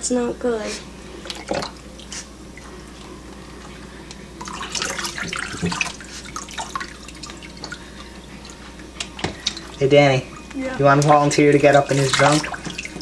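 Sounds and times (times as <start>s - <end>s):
running water hissing: 0.6s - 13.0s
water splashing: 1.2s - 2.3s, 4.4s - 13.0s.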